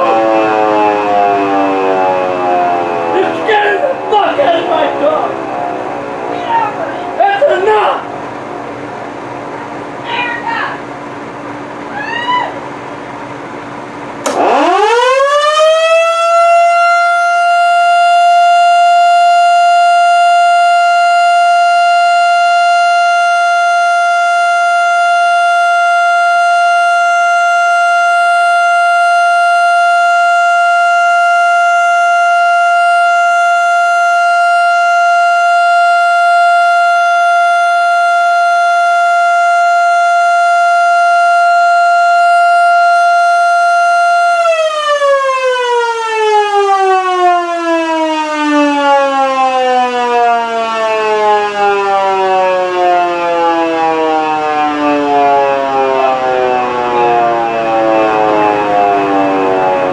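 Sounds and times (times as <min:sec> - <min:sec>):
warning siren steady tone: 0:00.0 - 0:07.5, 0:13.6 - 0:59.9.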